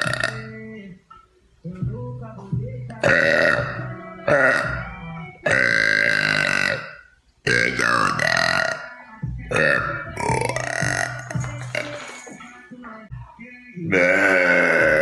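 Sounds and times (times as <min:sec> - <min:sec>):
woman burping loudly: 0:00.0 - 0:00.5, 0:03.0 - 0:04.8, 0:05.4 - 0:08.9, 0:09.5 - 0:11.9, 0:13.9 - 0:15.0.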